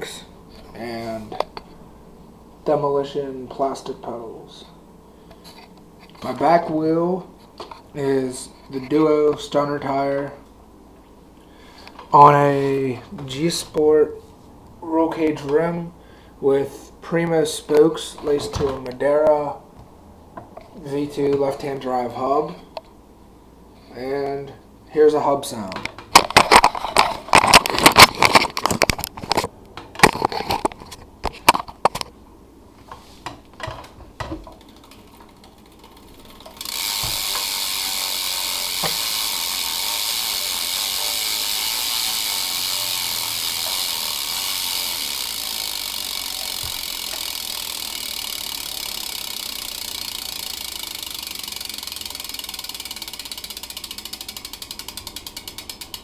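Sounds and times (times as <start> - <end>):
bike hub clicking: 33.6 - 56.0.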